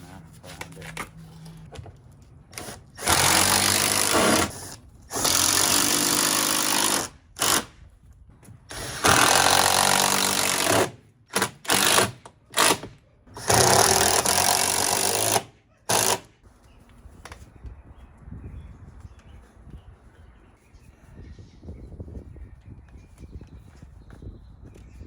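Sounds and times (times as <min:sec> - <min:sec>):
power drill drilling into wood: 0:02.6 - 0:07.7, 0:08.7 - 0:16.2.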